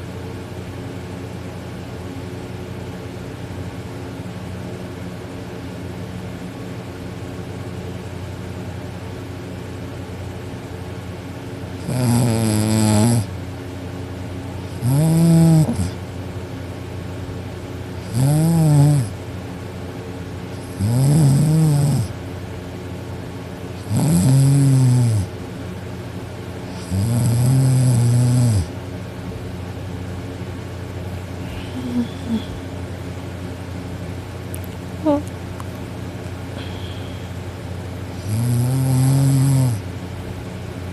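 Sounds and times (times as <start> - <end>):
steady background hum: 0.0 - 40.9
girl snoring loudly: 11.8 - 13.3, 14.7 - 16.0, 18.1 - 19.2, 20.6 - 22.1, 23.8 - 25.3, 26.8 - 28.7, 31.5 - 32.6, 38.2 - 39.8.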